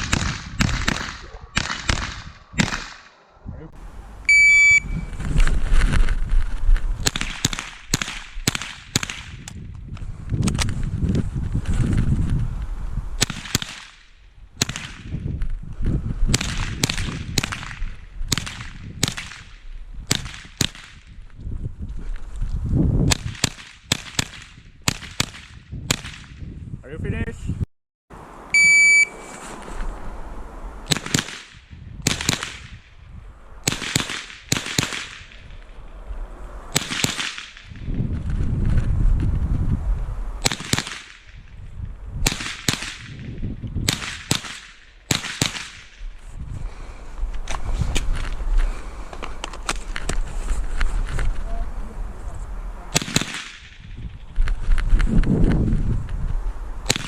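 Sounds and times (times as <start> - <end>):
rifle shots cracking: 0.0 - 3.2, 7.0 - 9.4, 13.2 - 14.0, 30.9 - 32.8, 33.6 - 35.4, 36.7 - 37.7, 40.4 - 41.4, 42.2 - 43.2, 43.9 - 45.9, 52.9 - 53.9
shot timer beep: 4.3 - 5.1, 28.5 - 29.3.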